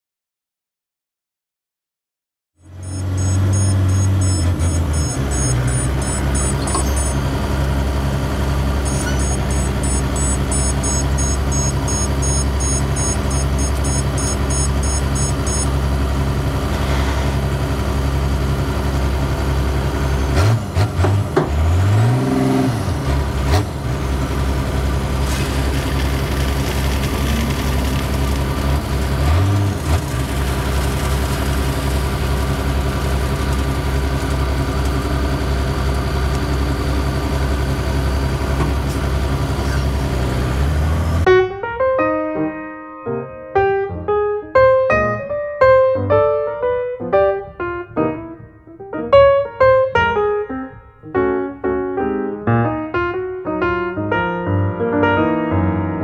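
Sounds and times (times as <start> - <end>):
construction machine engine running: 2.6 - 41.3
pulsing alarm beeps: 2.7 - 7.3, 8.8 - 15.8.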